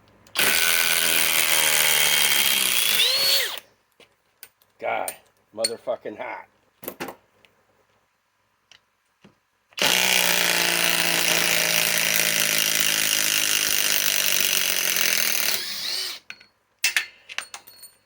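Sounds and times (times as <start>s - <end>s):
cordless impact tool running: 0.4s - 3.6s, 9.8s - 16.2s.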